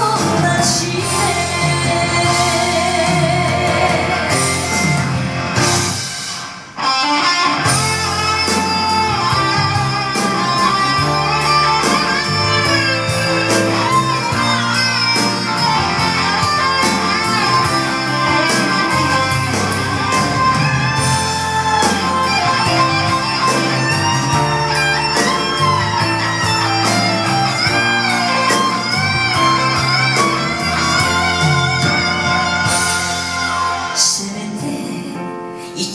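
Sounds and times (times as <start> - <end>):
lead guitar melody: 0.0 - 35.1
band accompaniment: 0.0 - 35.3
steady drum beat: 7.7 - 33.9.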